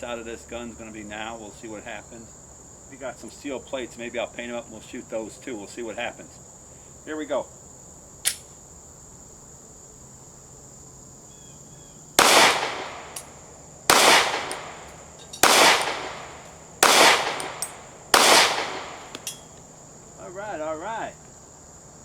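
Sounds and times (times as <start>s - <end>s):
crickets chirring: 0.0s - 22.0s
sharp click: 8.2s - 8.5s, 12.2s - 19.6s
pistol shots: 12.2s - 19.5s.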